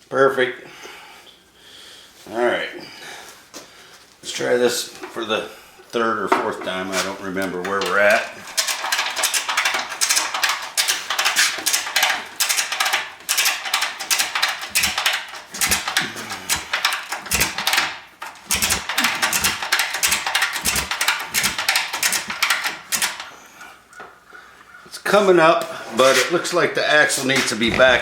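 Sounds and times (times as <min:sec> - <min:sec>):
ratchet strap clicking: 0:08.5 - 0:23.3.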